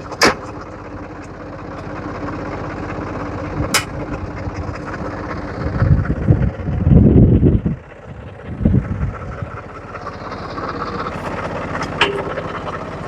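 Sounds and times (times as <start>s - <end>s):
tractor diesel engine idling: 0.0s - 13.0s
sharp metal clank: 11.9s - 12.4s.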